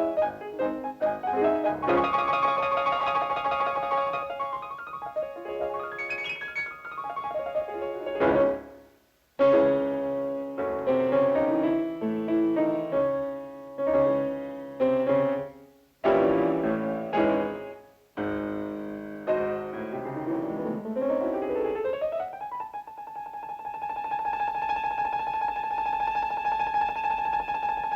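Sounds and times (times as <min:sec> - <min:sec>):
piano chords: 0:00.0 - 0:27.9.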